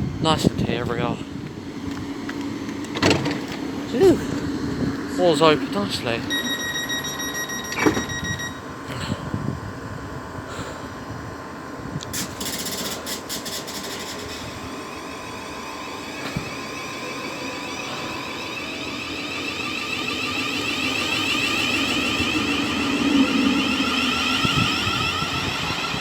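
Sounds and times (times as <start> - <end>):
electric train running hum: 0.0 - 26.0
steady high electronic tone: 5.2 - 8.7, 14.6 - 26.0.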